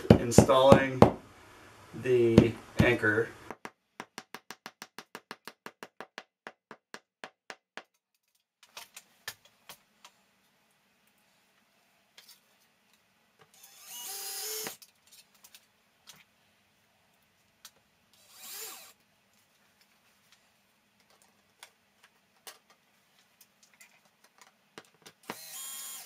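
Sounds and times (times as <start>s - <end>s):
rubber mallet tapping plastic: 2.4s - 7.9s.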